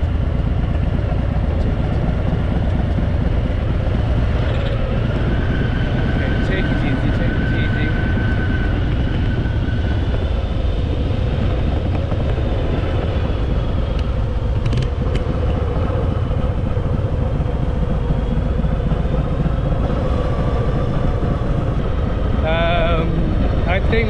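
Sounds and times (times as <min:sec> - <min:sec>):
motorcycle engine running: 0:00.0 - 0:24.0.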